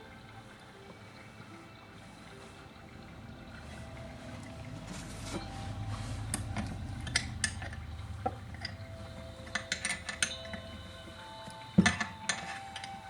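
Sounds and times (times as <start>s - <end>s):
steady low hum: 0.0s - 13.0s
tools clicking and clinking: 6.4s - 10.9s, 11.5s - 13.0s.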